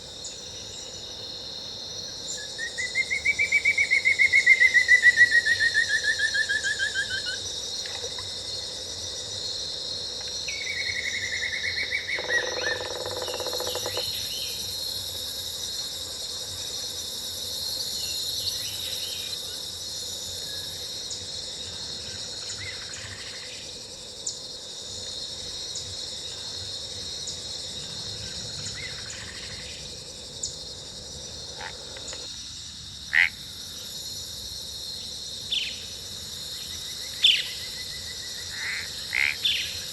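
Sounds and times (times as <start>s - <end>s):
insects trilling: 0.0s - 39.9s.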